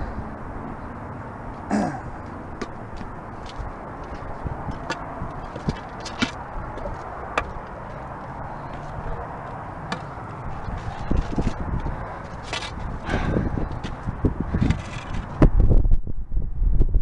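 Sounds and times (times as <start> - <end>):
steady low rumble: 0.0 - 17.0
footsteps on rocky trail: 2.3 - 15.3.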